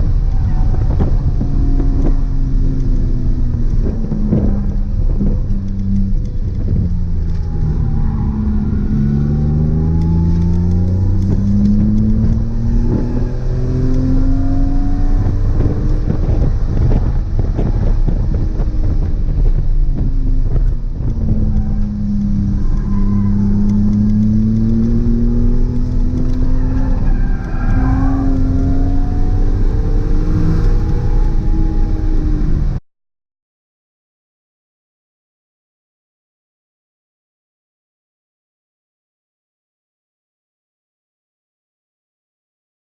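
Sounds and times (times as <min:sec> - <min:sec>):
car engine accelerating through gears: 0:00.0 - 0:32.8
road and wind noise: 0:00.0 - 0:32.8.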